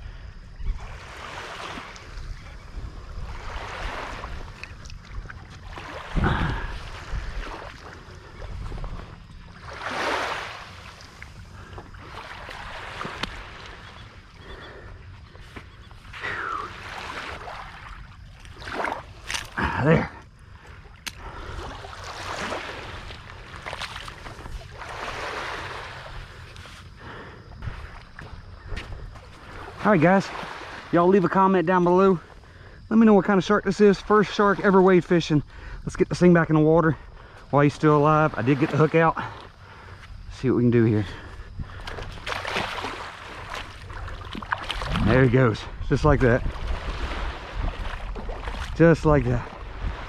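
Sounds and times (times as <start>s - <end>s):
wind noise on microphone: 0.0s - 16.3s, 21.0s - 29.7s, 41.1s - 42.4s, 43.8s - 50.0s
small waves washing on shore: 0.3s - 50.0s
shallow water sloshing: 0.7s - 50.0s.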